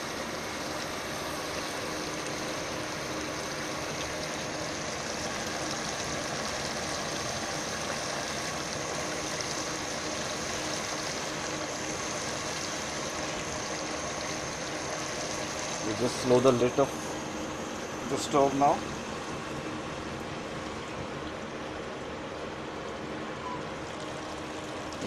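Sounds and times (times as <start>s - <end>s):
vegetables sizzling in a pan: 0.0s - 19.5s.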